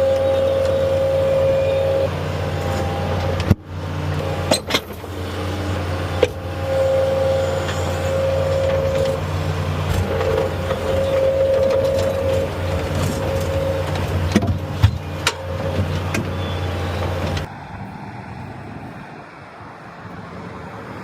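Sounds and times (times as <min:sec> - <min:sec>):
excavator diesel engine running: 0:00.0 - 0:21.0.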